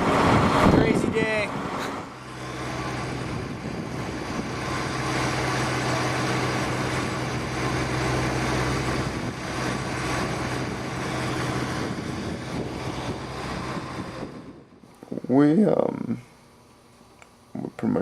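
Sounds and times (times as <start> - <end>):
engine running: 0.0 - 17.3.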